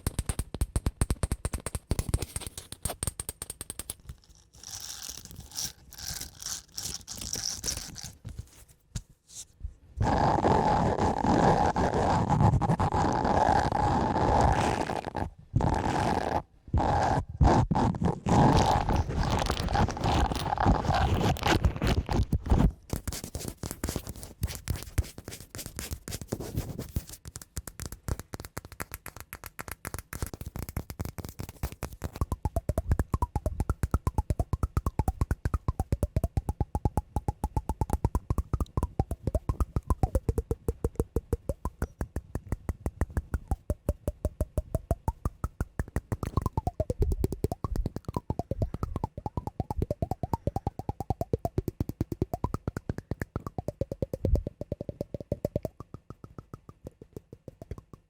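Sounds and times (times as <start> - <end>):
scraping on cork: 3.8 - 56.4
fast taps on wood: 27.0 - 58.0.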